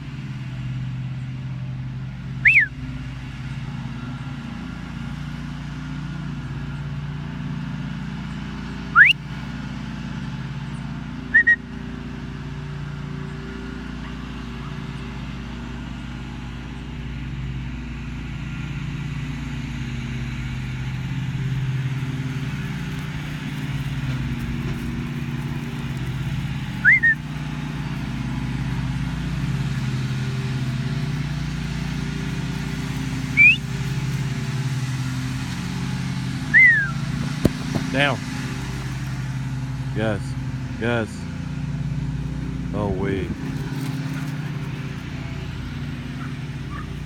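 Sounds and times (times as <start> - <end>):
lawn mower engines running: 0.0 - 47.0
short sharp whistles: 2.4 - 2.7, 8.9 - 9.2, 11.3 - 11.6, 26.8 - 27.2, 33.4 - 33.7, 36.5 - 37.9.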